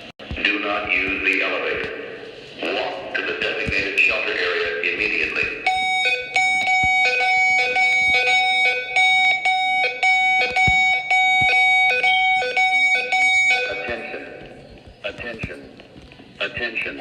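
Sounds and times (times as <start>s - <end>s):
two-pitch electronic alarm tone: 5.6s - 14.4s.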